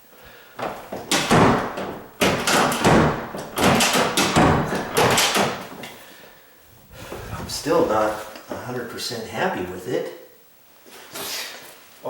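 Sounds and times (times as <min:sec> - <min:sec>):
door pushed shut and opened: 0:00.6 - 0:05.9
door latch clicking: 0:01.0 - 0:05.9.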